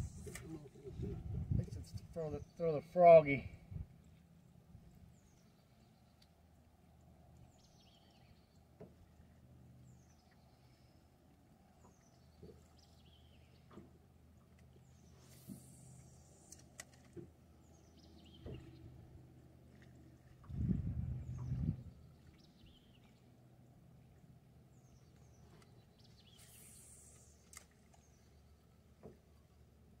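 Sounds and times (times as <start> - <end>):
low steady hum: 0.0 - 30.0
faint ticks: 6.1 - 6.4.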